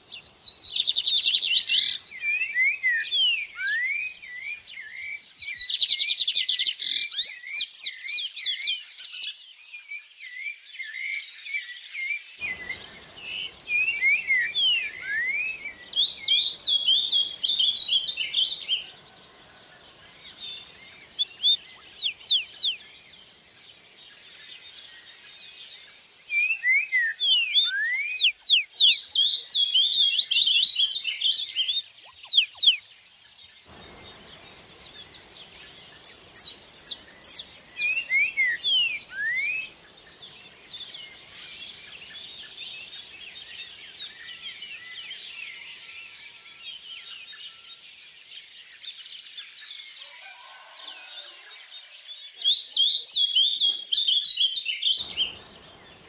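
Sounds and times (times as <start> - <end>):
songbirds chirping and trilling: 0.0 - 56.0
faint stream water rushing: 12.4 - 27.1, 33.7 - 45.6, 55.0 - 56.0.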